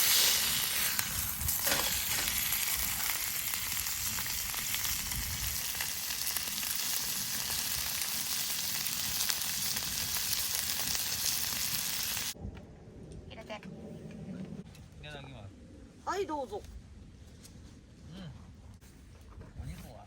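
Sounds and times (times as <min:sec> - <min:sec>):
meat sizzling: 0:00.0 - 0:12.4
small crackles: 0:00.0 - 0:12.4.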